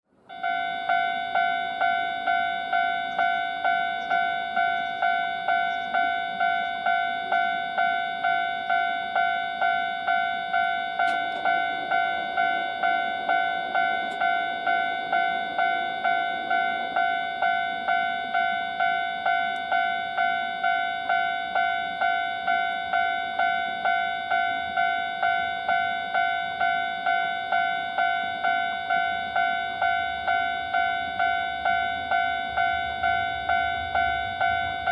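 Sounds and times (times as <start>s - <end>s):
level-crossing bell ringing: 0.3s - 34.9s
low rumble: 31.5s - 34.9s.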